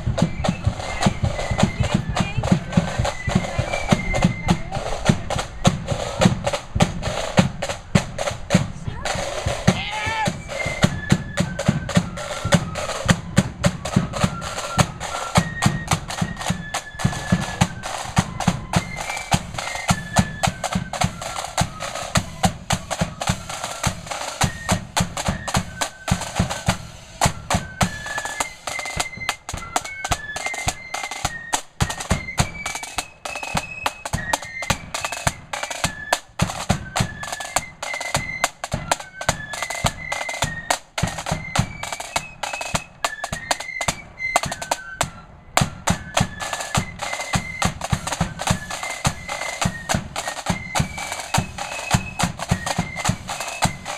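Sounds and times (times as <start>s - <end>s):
flutes playing high melody: 0.0s - 53.9s
rattling snare drums: 0.0s - 53.9s
bass drum beat: 1.6s - 10.6s.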